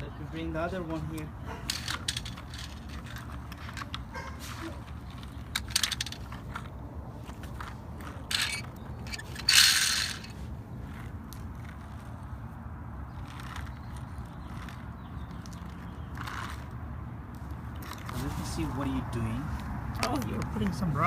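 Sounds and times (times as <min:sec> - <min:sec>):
toy trucks and rocks clicking: 0:01.0 - 0:12.4, 0:13.1 - 0:18.2
scraping rattle: 0:01.6 - 0:12.2, 0:13.1 - 0:16.8.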